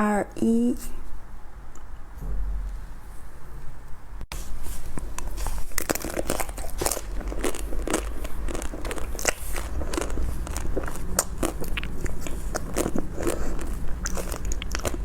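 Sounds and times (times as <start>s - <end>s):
chocolate shell crunching: 4.9s - 15.0s.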